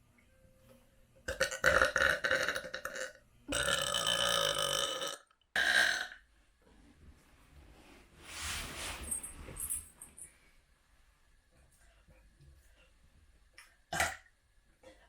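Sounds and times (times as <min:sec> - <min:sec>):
person burping: 0:01.3 - 0:06.2, 0:13.9 - 0:14.3.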